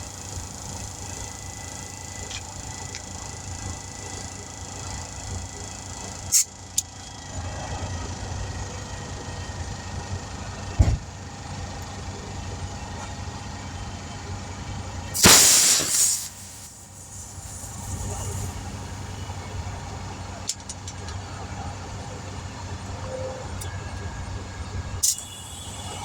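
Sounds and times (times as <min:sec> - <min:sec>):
low engine rumble: 0:00.0 - 0:26.0
thump: 0:10.8 - 0:11.1
air hissing from tire valve: 0:15.2 - 0:19.5, 0:25.0 - 0:26.0.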